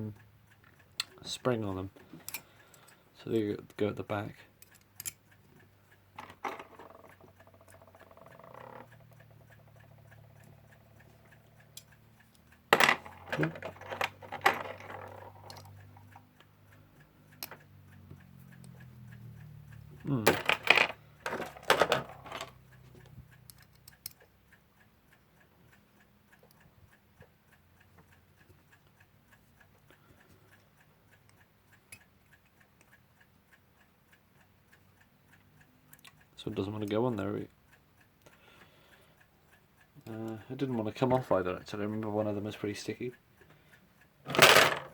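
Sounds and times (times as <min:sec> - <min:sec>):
mechanical clock ticking: 0:00.0 - 0:44.9
clock parts clicking: 0:00.1 - 0:44.9
metal parts clicking: 0:06.2 - 0:09.0, 0:12.7 - 0:15.8, 0:20.1 - 0:22.6, 0:44.3 - 0:44.9.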